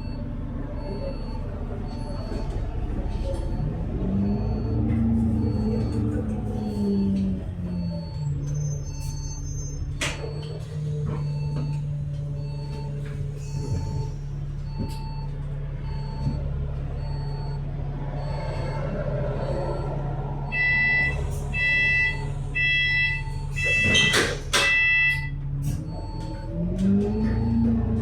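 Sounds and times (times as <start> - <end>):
bus engine idling: 0.0 - 28.0
soft warning beep: 20.5 - 26.6
door chime beeping: 20.6 - 25.4.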